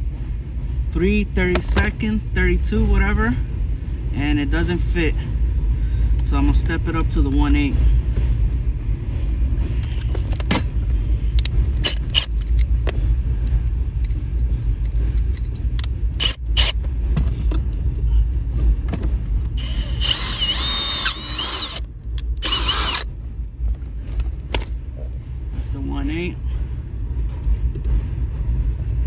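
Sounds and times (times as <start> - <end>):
steady low rumble: 0.0 - 29.0
power drill whirring: 11.8 - 12.6, 16.2 - 16.8, 19.4 - 23.1
drill bits being handled: 19.6 - 21.8, 22.4 - 23.0.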